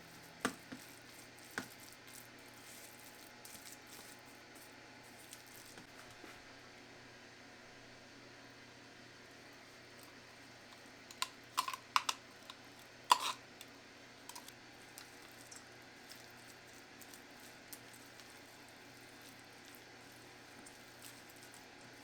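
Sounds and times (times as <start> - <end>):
kitchen utensils clicking and knocking: 11.1 - 13.4.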